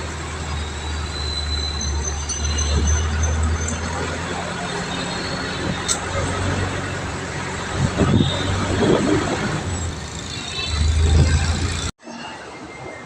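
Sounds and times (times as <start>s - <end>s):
road vehicle engine hum: 0.0s - 12.6s.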